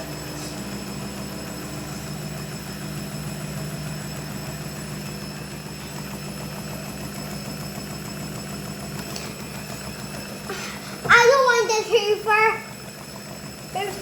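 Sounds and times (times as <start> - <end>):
washing machine spinning: 0.0 - 14.0.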